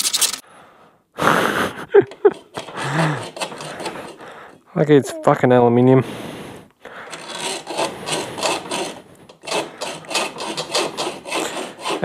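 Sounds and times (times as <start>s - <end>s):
hacksaw cutting metal tubing: 2.2s - 4.6s, 7.0s - 12.0s.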